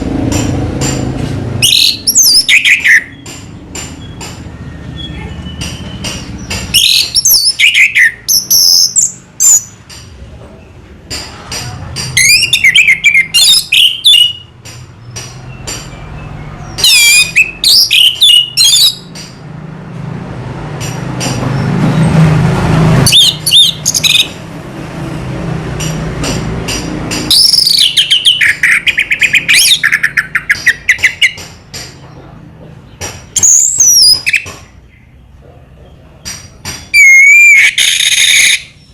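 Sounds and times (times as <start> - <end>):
bird singing whistles and trills: 1.6 - 3.3, 6.7 - 9.7, 12.2 - 14.5, 15.5 - 19.1, 23.1 - 24.4, 27.3 - 31.4, 33.4 - 34.5, 36.9 - 38.9.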